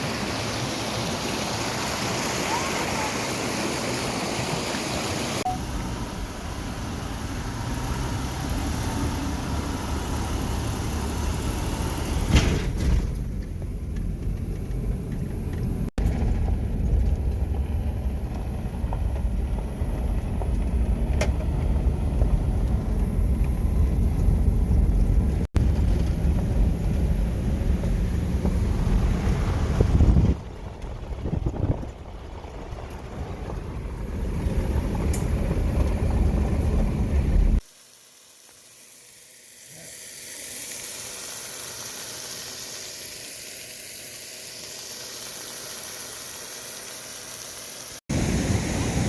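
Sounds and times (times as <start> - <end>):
road and engine rumble: 0.0 - 37.6, 48.1 - 49.0.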